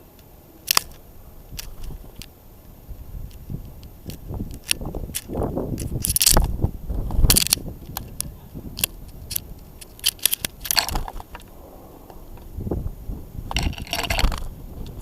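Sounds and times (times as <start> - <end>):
birds fluttering wings: 0.8 - 2.3, 9.0 - 12.6.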